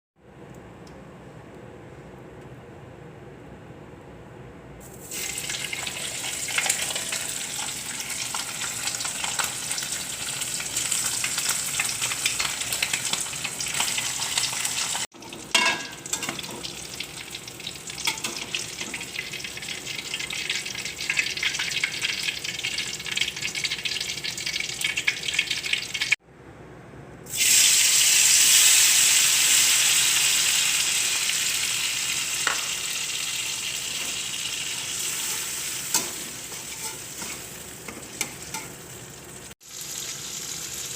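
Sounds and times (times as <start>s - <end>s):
meat sizzling in hot oil: 4.9s - 26.2s, 27.3s - 40.9s
stirring in a pan: 34.9s - 39.4s.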